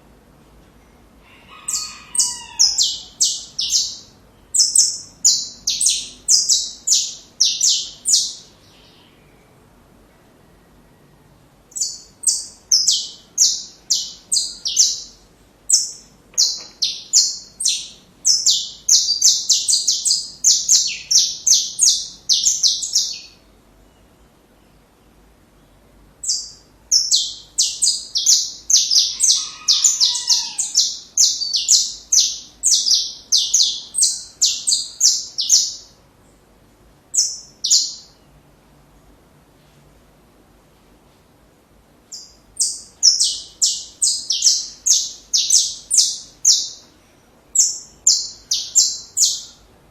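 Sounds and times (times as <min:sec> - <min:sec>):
finch singing: 0:01.7 - 0:09.4, 0:11.7 - 0:24.8, 0:26.2 - 0:36.0, 0:37.1 - 0:38.2, 0:42.1 - 0:46.9, 0:47.5 - 0:49.6.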